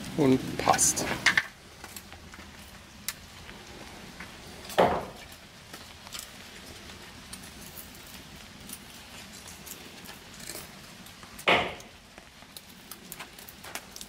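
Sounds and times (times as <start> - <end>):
gear clicking when handled: 7.3 - 10.8.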